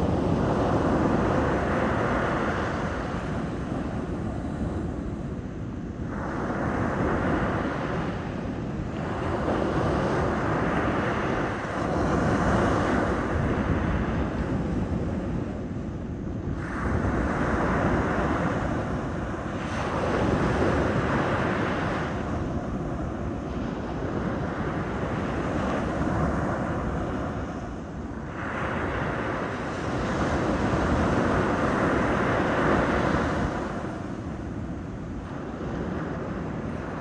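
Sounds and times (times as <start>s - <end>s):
sea waves breaking: 28.3s - 37.0s.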